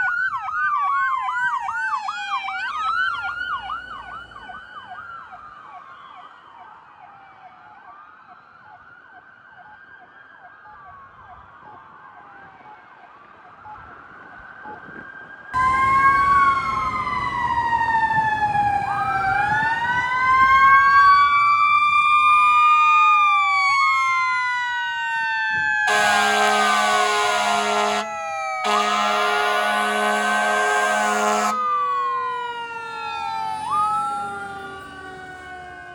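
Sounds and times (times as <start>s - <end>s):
yelping sirens: 0.0s - 8.1s, 15.6s - 35.9s
wailing sirens: 0.0s - 35.9s
horn blast: 25.9s - 31.7s.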